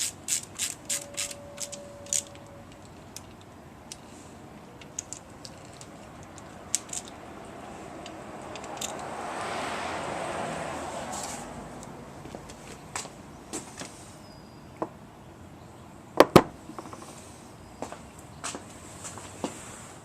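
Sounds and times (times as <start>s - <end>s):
metallic clicks of hand tools: 4.8s - 7.2s, 8.0s - 9.1s
broad rushing noise: 6.6s - 14.1s.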